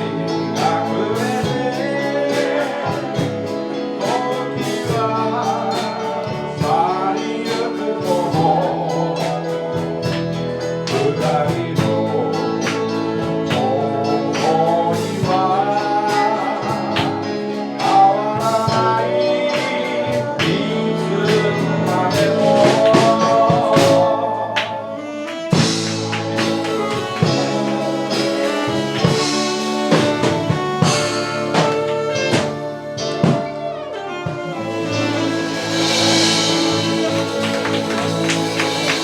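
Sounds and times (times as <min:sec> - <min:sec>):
person singing: 0:00.0 - 0:39.0
sustained instrumental chords: 0:00.0 - 0:39.0
drum and cymbal strokes: 0:25.2 - 0:39.0.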